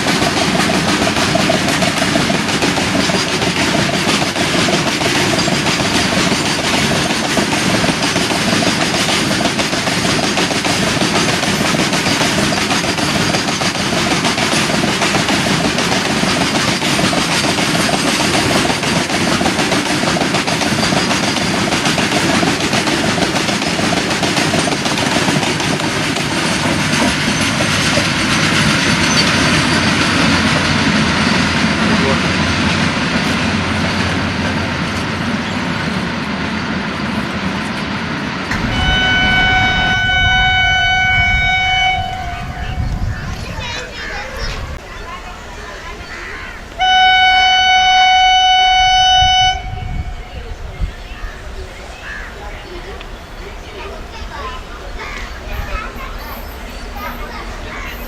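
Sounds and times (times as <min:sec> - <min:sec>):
train wheels clattering on rails: 0:00.0 - 0:49.8, 0:50.8 - 0:58.0.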